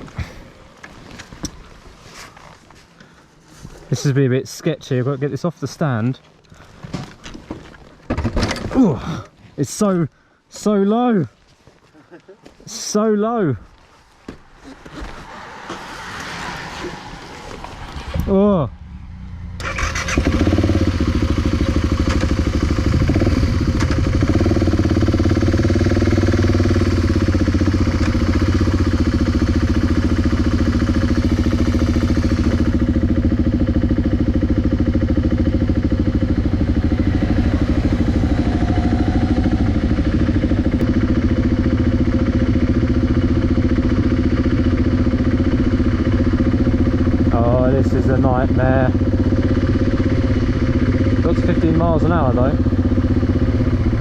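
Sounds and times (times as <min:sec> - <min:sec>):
motorcycle engine running: 0:18.3 - 0:54.0.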